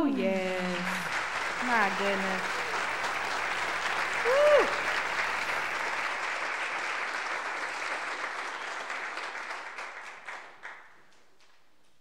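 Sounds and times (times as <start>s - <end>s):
audience applauding: 0.0s - 11.6s.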